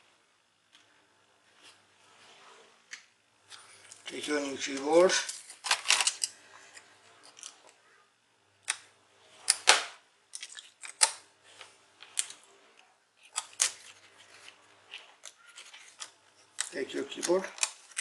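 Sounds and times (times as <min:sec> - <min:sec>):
rustling: 0:10.4 - 0:18.0.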